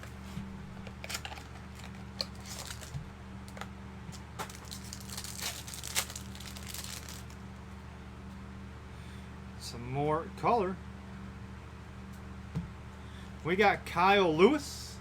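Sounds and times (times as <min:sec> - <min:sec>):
steady low hum: 0:00.0 - 0:15.0
wrapper crinkling and tearing: 0:00.8 - 0:07.4.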